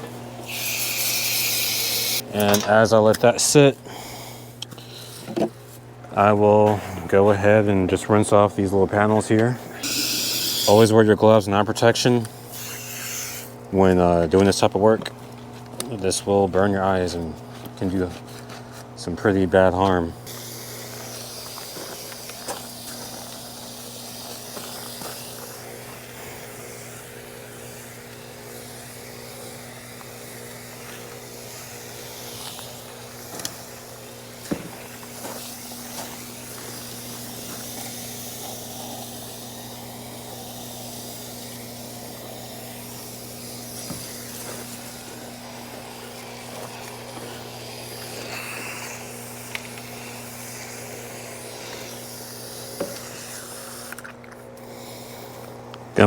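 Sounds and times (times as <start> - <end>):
hose spray nozzle hissing: 0.0 - 2.6, 9.6 - 11.0, 12.2 - 13.6, 20.2 - 55.6
low electrical hum: 0.0 - 56.0.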